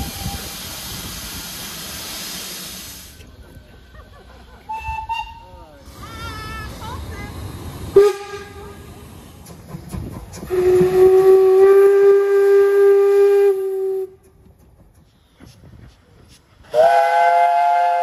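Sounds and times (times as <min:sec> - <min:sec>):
steam locomotive whistle: 0:04.7 - 0:05.5, 0:07.9 - 0:08.7, 0:10.5 - 0:14.2, 0:16.7 - 0:18.0.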